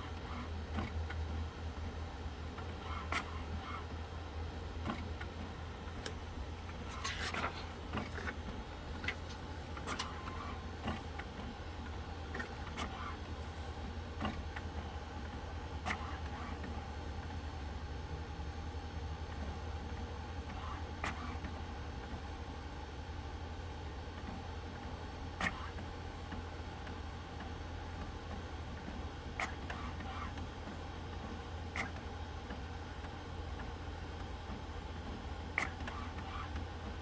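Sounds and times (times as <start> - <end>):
printer humming: 0.0 - 37.0.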